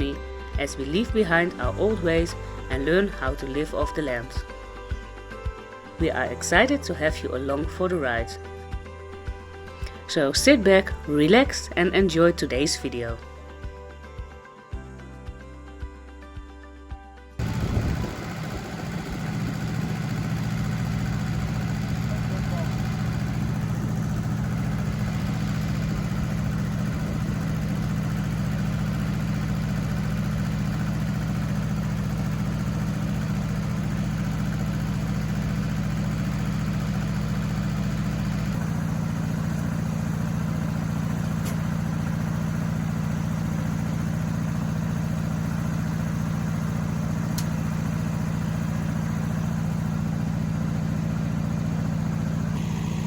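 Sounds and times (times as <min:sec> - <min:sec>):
engine idling: 0:00.0 - 0:05.3, 0:17.4 - 0:53.0.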